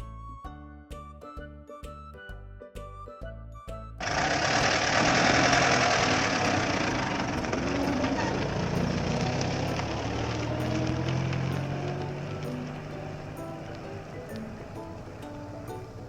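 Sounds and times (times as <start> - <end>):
vehicle engine running: 4.0 - 16.0.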